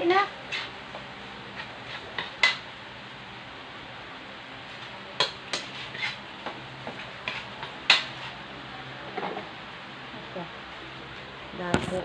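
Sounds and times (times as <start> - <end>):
frying sizzle: 0.0 - 11.7
metal utensil scraping frying pan: 0.1 - 0.8, 5.2 - 6.3.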